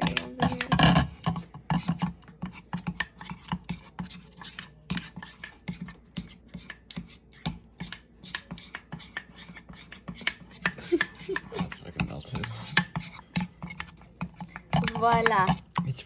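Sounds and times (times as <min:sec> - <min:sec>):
utensil scraping a pan: 0:00.0 - 0:16.0.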